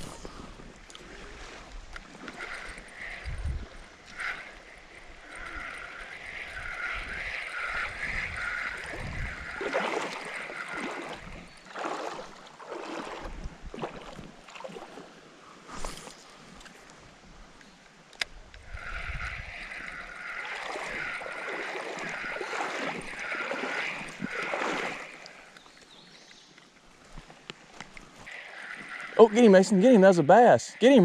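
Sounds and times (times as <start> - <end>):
short water splashes: 0.0 - 15.2, 18.7 - 26.0
creek water running: 0.0 - 31.0
wavering high drone: 2.5 - 11.4.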